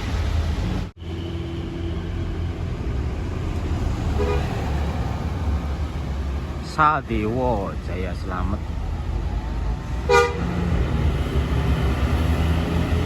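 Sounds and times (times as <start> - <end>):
diesel bus engine rumbling: 0.0 - 13.0
bus horn toot: 4.1 - 4.7, 10.0 - 10.7.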